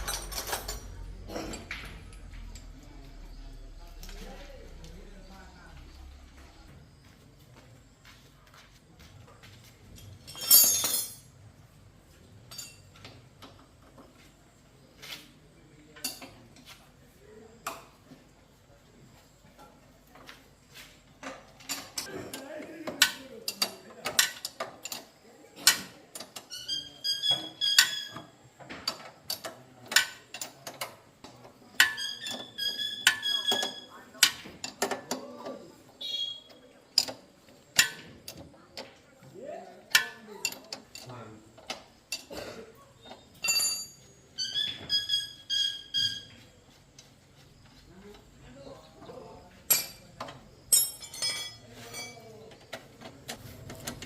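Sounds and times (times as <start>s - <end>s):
metal tools clinking: 0.0s - 4.3s, 9.9s - 11.4s, 12.4s - 13.0s, 31.7s - 35.4s, 39.9s - 46.2s, 49.7s - 53.0s
metallic knocks ringing: 43.3s - 44.1s.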